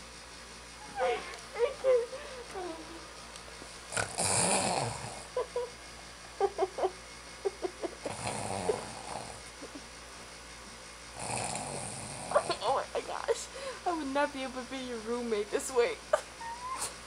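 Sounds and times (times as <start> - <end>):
person fake snoring: 3.9 - 5.6, 8.0 - 9.7, 11.1 - 12.6.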